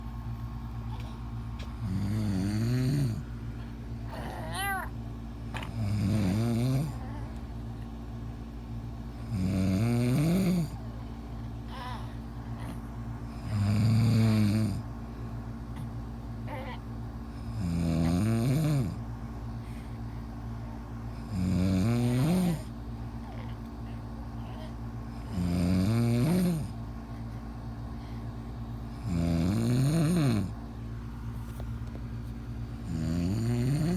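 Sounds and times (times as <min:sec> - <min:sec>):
steady low hum: 0:00.0 - 0:33.9
man snoring: 0:01.8 - 0:03.3, 0:05.6 - 0:07.2, 0:09.2 - 0:10.9, 0:12.6 - 0:14.9, 0:16.5 - 0:19.0, 0:21.1 - 0:23.6, 0:24.4 - 0:26.8, 0:28.9 - 0:30.6, 0:32.8 - 0:33.9.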